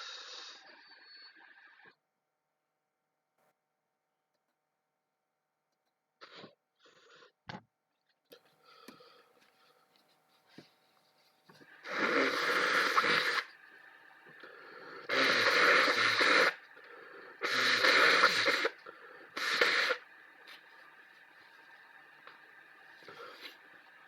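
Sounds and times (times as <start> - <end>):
rasping wheezy breathing: 11.5 - 13.7, 14.3 - 20.1, 23.0 - 23.9.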